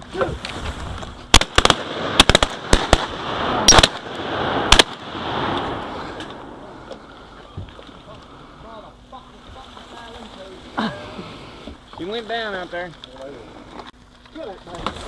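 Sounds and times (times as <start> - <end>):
shotgun shots: 1.3 - 6.4.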